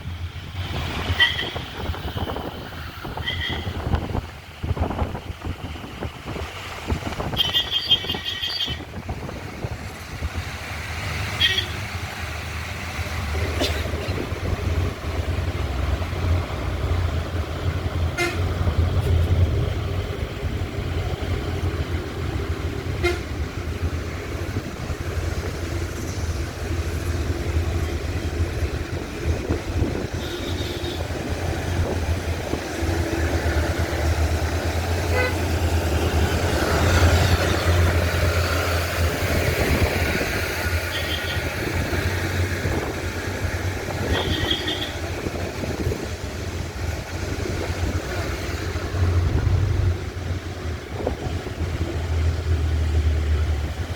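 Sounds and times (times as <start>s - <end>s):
car engine and road rumble: 0.0s - 53.9s.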